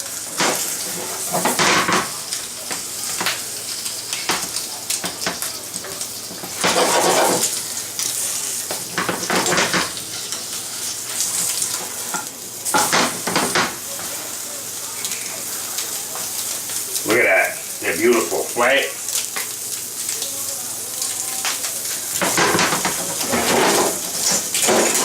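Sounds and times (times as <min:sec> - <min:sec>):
butter sizzling in frying pan: 0:00.0 - 0:25.0
spatula scraping pan: 0:06.3 - 0:07.6, 0:08.7 - 0:14.2, 0:22.2 - 0:25.0.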